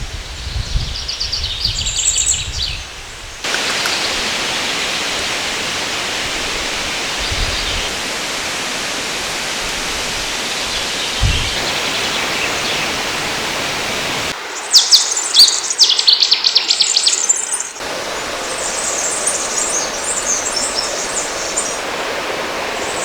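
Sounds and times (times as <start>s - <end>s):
birds chirping: 0.3s - 23.0s
river rushing: 3.4s - 15.9s, 17.8s - 23.0s.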